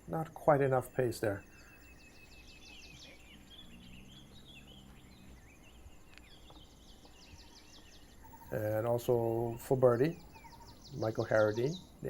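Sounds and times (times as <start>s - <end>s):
faint low hum: 0.0s - 12.0s
small birds chirping: 0.0s - 12.0s.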